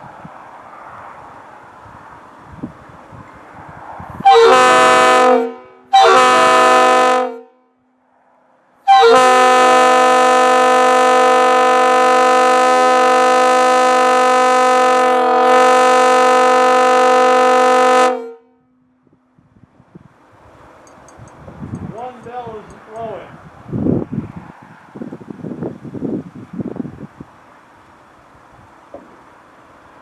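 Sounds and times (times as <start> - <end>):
locomotive air horn blasts: 4.2 - 7.8, 8.8 - 18.8.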